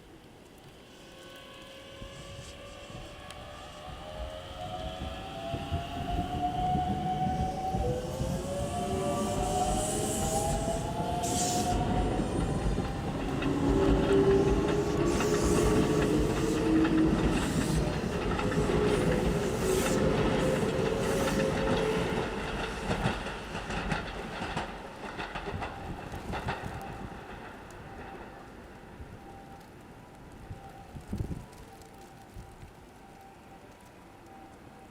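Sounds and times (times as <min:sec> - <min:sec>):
electric train rumble: 0:00.0 - 0:34.9.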